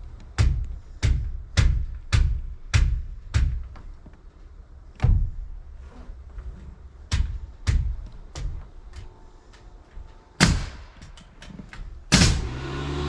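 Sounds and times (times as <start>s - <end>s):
heavy hammer strikes: 0.0s - 3.8s, 10.4s - 11.3s, 12.1s - 12.8s
hammer driving nails into wood: 7.1s - 9.1s, 10.4s - 12.6s.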